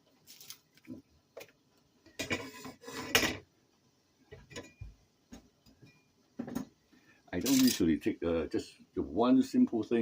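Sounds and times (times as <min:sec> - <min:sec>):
dishes and utensils clattering: 0:02.1 - 0:03.5, 0:04.3 - 0:04.9.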